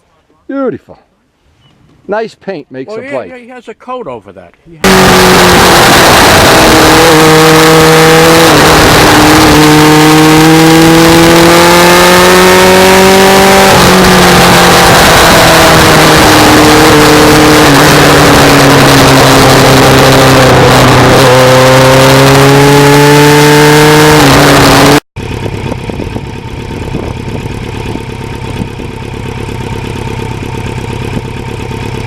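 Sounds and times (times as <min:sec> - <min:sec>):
motorcycle engine revving: 0:04.8 - 0:32.0
wind noise on microphone: 0:24.4 - 0:28.9.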